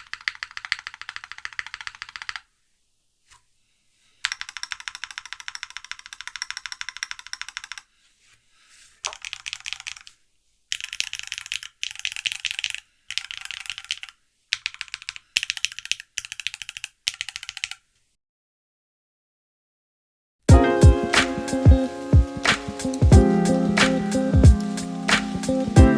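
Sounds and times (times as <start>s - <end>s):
mechanical keyboard typing: 0.0s - 2.5s, 4.2s - 7.9s, 9.0s - 17.9s.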